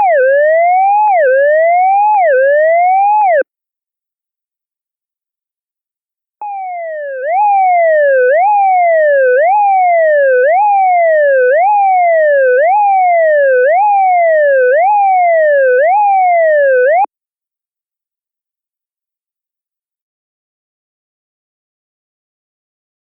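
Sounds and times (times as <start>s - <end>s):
electronic siren wail: 0.0s - 3.4s, 6.4s - 17.1s.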